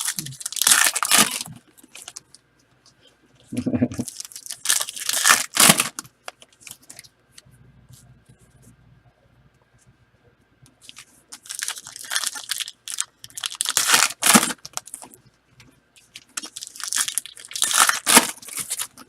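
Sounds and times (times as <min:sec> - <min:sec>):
wrapping torn and crinkled: 0:00.0 - 0:02.4, 0:04.0 - 0:07.1, 0:10.8 - 0:15.2, 0:16.0 - 0:19.0.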